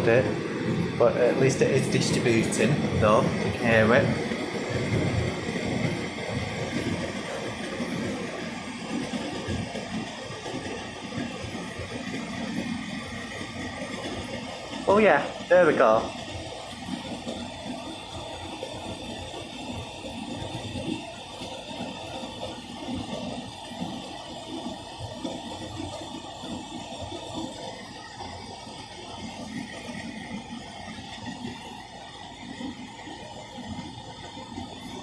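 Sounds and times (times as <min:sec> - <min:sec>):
low rumble of turning drum: 0:00.0 - 0:19.2
tumble dryer drum humming: 0:00.0 - 0:35.0.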